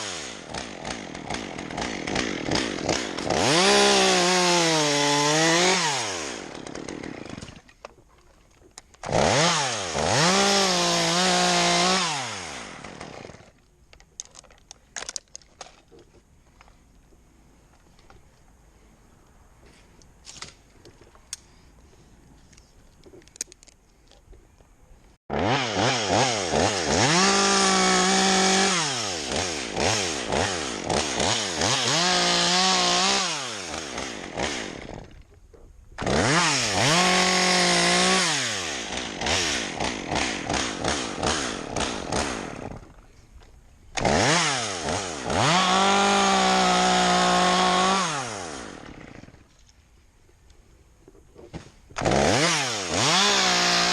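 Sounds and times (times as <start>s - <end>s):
chainsaw running at high revs: 0.0s - 7.6s, 9.1s - 13.5s, 25.3s - 35.2s, 36.0s - 43.0s, 44.0s - 49.5s, 52.0s - 53.9s.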